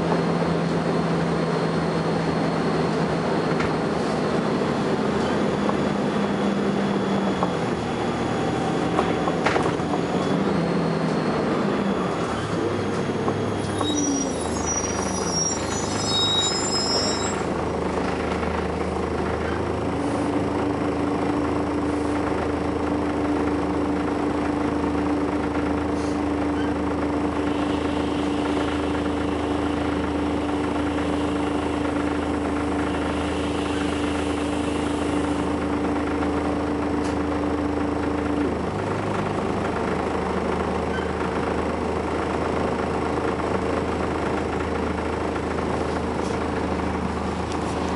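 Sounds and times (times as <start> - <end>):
bus engine droning: 0.0 - 47.9
short high squeaks: 11.0 - 17.5, 40.9 - 41.2.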